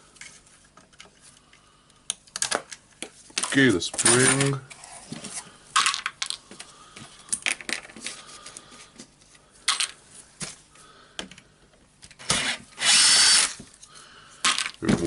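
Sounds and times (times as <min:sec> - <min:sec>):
clicks and clinks of parts handled: 0:00.2 - 0:04.7, 0:09.7 - 0:10.0, 0:14.4 - 0:14.8.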